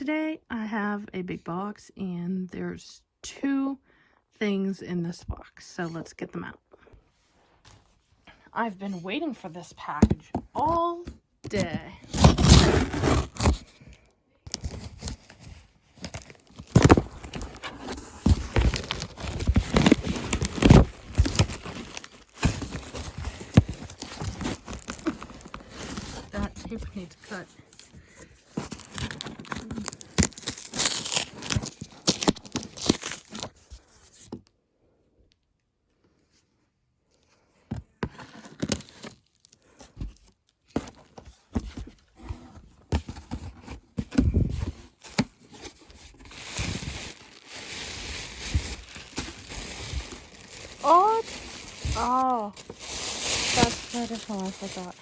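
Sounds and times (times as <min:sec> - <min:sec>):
cardboard box being pulled open: 0:12.0 - 0:13.8, 0:14.6 - 0:26.7
packing paper crinkling: 0:12.1 - 0:13.7, 0:14.5 - 0:33.7, 0:44.6 - 0:55.0.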